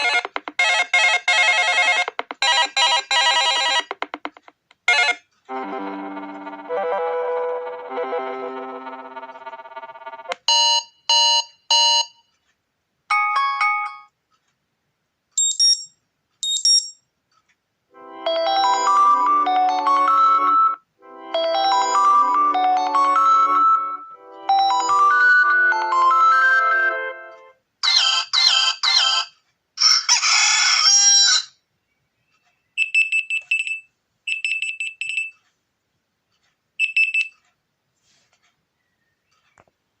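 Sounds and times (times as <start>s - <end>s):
phone alarm melody: 18.1s - 27.2s
recorded rooster crow: 29.8s - 31.6s.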